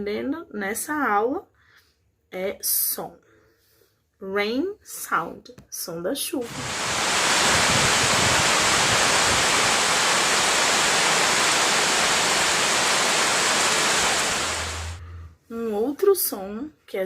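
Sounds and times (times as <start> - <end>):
heavy rain hissing: 6.4 - 15.3.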